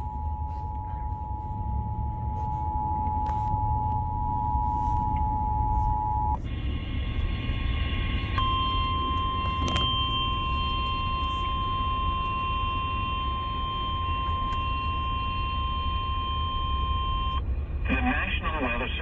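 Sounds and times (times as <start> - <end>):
low rumble: 0.0 - 19.0
two-tone attention signal: 8.4 - 17.4.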